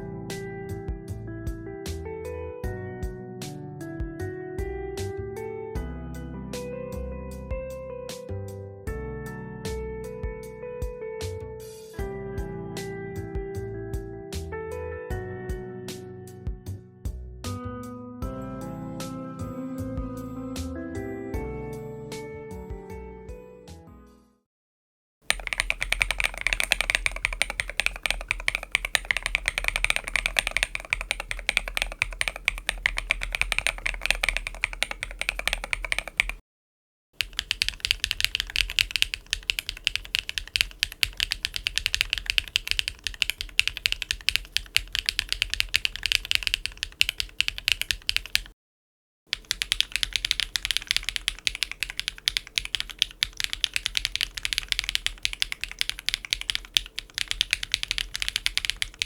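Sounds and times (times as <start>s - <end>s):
mechanical keyboard typing: 25.3s - 36.4s, 37.2s - 48.5s, 49.3s - 59.0s.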